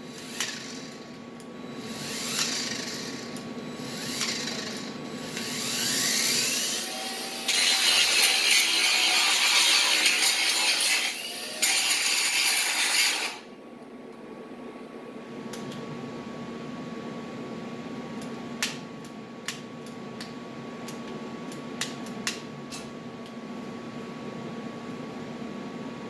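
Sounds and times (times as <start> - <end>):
steady hum: 0.0 - 26.0
angle grinder grinding metal: 4.0 - 13.4.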